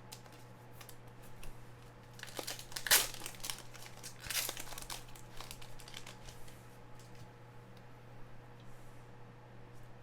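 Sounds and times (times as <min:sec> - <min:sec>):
plastic wrapper crinkling: 0:02.1 - 0:07.2.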